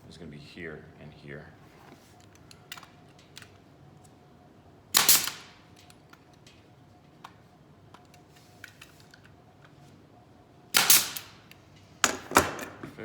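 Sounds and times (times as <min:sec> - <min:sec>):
nail gun firing: 0:04.9 - 0:05.6, 0:10.7 - 0:11.4.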